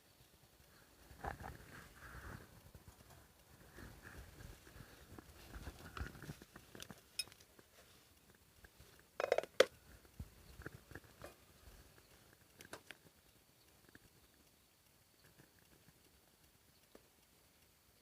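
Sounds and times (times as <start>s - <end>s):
small objects clicking and knocking: 5.1s - 16.2s.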